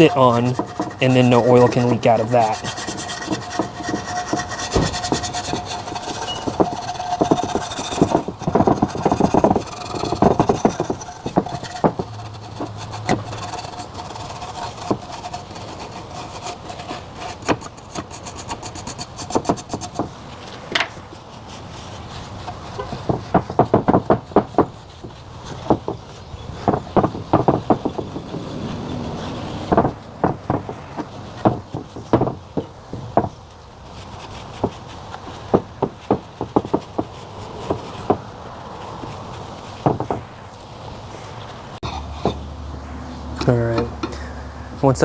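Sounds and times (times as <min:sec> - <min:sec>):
wire brush scrubbing metal: 0:00.0 - 0:23.3.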